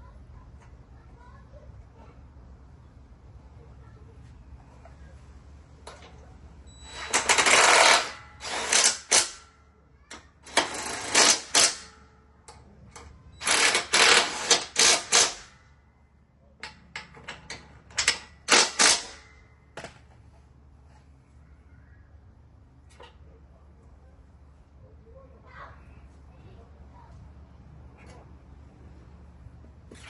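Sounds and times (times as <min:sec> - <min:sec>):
power tool on fasteners: 0:06.8 - 0:09.4, 0:10.5 - 0:12.0, 0:13.4 - 0:15.5, 0:18.0 - 0:19.3.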